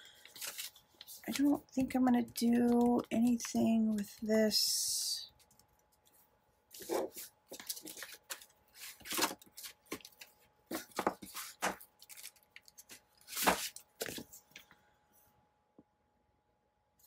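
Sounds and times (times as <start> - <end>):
paper pages rustling: 0.0 - 4.3, 5.4 - 14.7.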